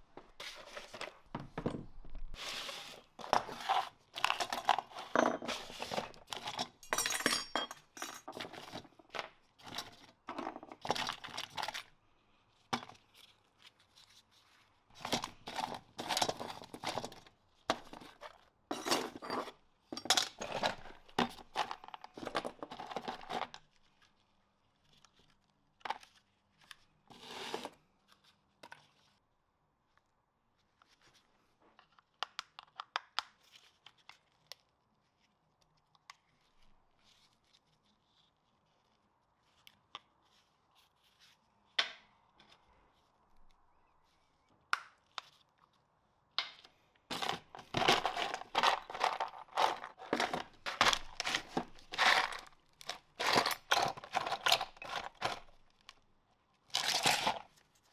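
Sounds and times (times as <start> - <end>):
clinks and knocks of parts: 4.2 - 9.3, 18.7 - 23.4, 47.1 - 55.6
crinkling rustles: 47.1 - 56.0.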